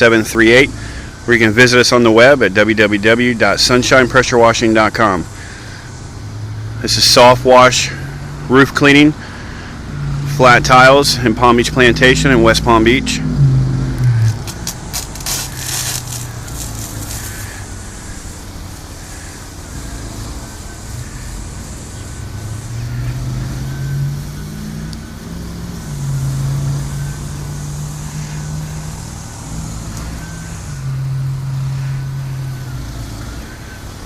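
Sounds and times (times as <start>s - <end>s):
steady hiss: 0.0s - 13.4s, 14.0s - 34.0s
engine droning: 0.0s - 34.0s.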